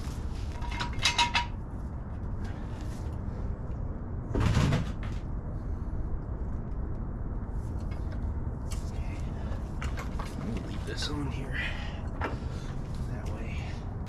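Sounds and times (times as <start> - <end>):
low background hum: 0.0 - 14.0
metallic clatter of hand tools: 0.5 - 1.6.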